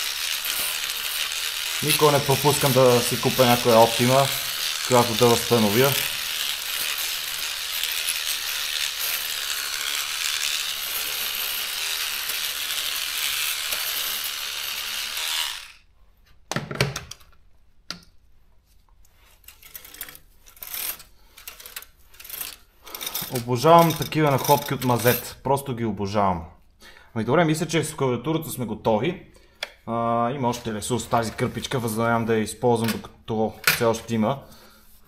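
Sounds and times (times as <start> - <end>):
electric cleaning brush buzzing: 0.0 - 15.9.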